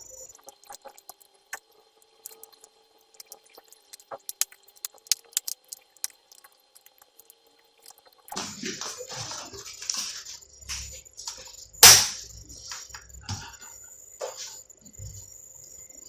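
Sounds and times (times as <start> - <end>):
small clicks and crackling pops: 0.1 - 8.4.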